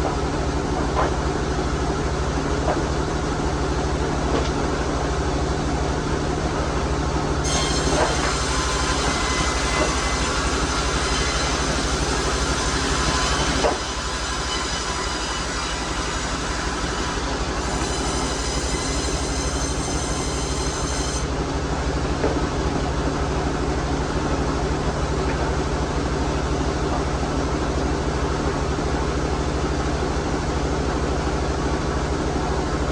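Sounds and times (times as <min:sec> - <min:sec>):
sawmill machine drone: 0:00.0 - 0:32.9
saw blade whining through log: 0:07.4 - 0:21.5.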